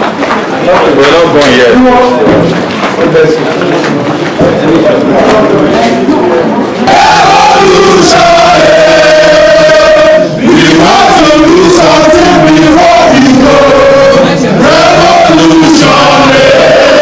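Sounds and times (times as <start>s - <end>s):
crowd singing a chant: 6.8s - 17.0s.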